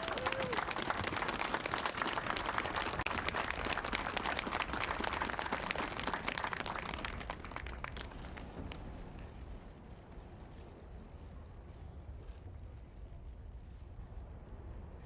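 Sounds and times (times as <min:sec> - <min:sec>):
crowd applauding: 0:00.0 - 0:08.9.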